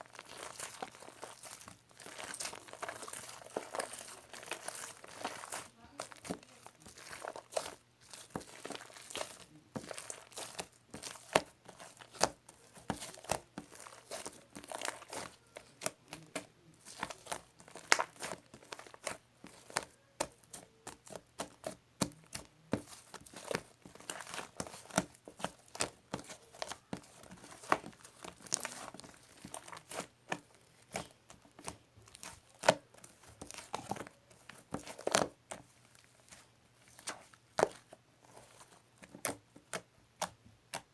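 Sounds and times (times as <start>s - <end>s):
crinkly material crackling: 0.0s - 40.9s.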